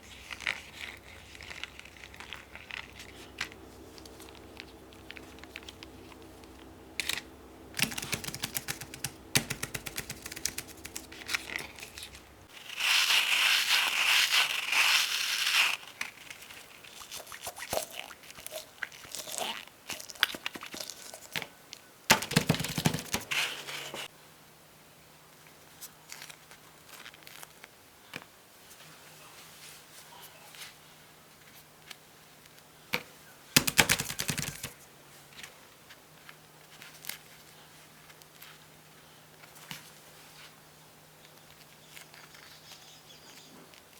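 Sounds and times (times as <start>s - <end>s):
loud noisy handling: 22.1s - 24.1s.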